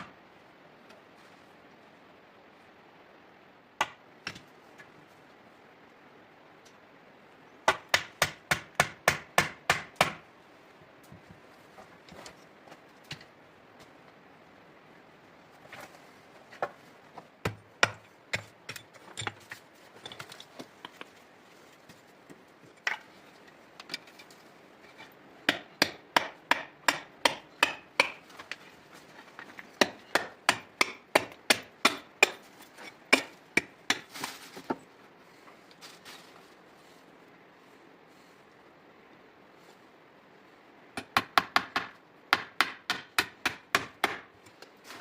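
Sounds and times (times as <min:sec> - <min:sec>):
hand tool knocking wood: 0:29.4 - 0:34.1.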